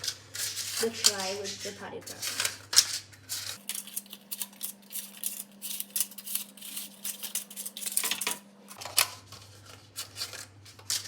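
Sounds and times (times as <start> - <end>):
paper cases rustling and clicking: 0.0 - 4.7, 7.0 - 11.0.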